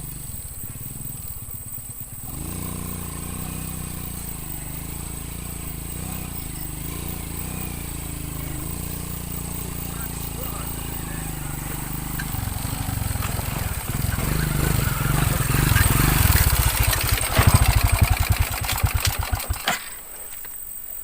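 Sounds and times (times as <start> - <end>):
motorcycle engine running: 0.0 - 19.9.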